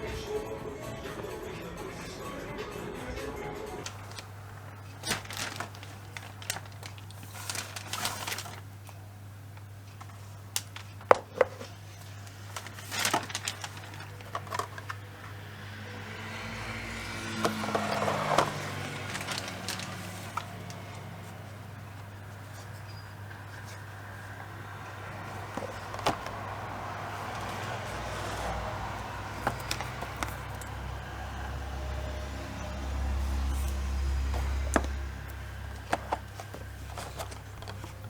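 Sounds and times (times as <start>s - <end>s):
rubbing and clattering: 3.9s - 8.8s, 9.6s - 15.1s, 17.3s - 31.1s, 32.6s - 38.0s
objects clicking and knocking: 9.9s - 15.1s, 24.6s - 31.0s, 33.3s - 38.0s.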